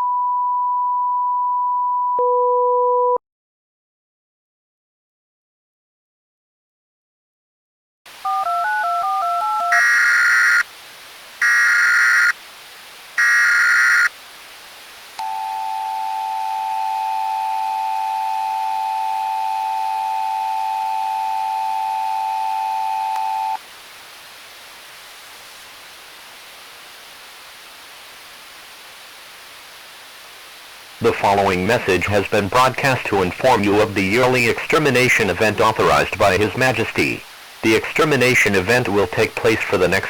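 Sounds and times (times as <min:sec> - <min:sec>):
screeching data bursts: 0:09.7 - 0:10.6, 0:11.4 - 0:12.4, 0:13.2 - 0:14.1
steady hiss: 0:09.8 - 0:21.6, 0:23.6 - 0:40.0
two-tone attention signal: 0:15.2 - 0:23.6.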